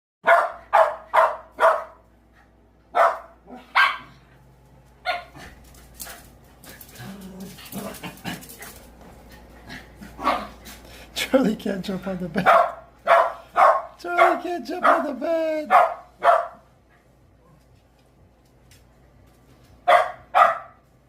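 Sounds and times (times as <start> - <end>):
small dog barking: 0.2 - 2.0, 2.9 - 4.2, 5.0 - 5.4, 10.2 - 10.6, 12.4 - 16.6, 19.8 - 20.8.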